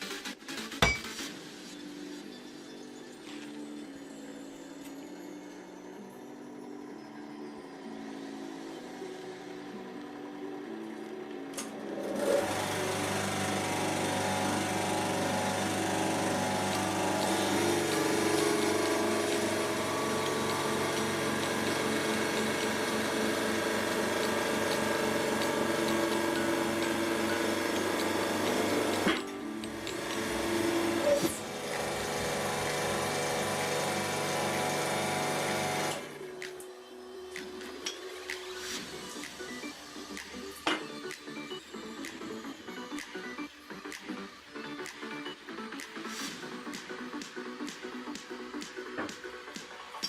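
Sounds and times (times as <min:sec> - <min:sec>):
pump motor whirring: 0:12.0 - 0:36.3.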